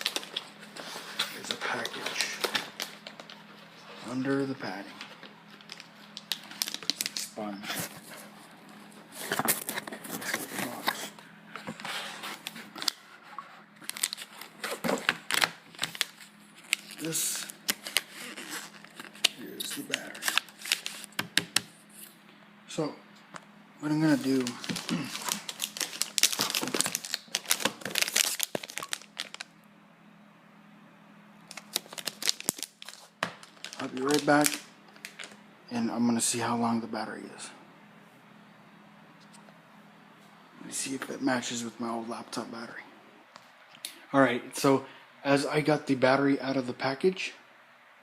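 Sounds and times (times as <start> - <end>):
packaging crinkling and rustling: 0.0 - 21.8, 23.9 - 29.5, 31.5 - 35.4.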